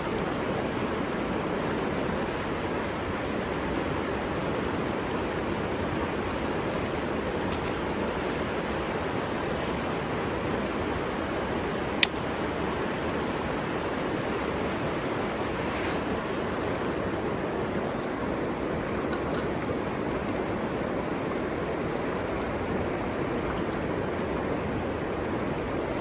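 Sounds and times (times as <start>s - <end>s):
river water rushing: 0.0s - 18.9s.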